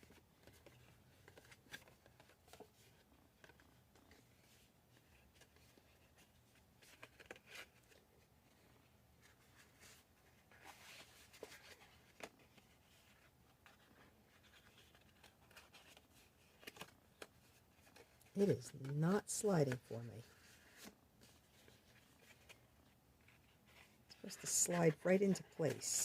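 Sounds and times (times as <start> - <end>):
card stock rustling and scraping: 8.6 - 26.0.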